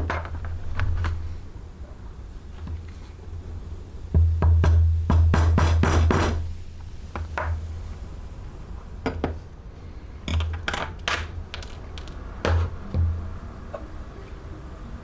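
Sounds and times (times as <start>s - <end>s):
tools clicking and knocking: 10.3s - 13.2s.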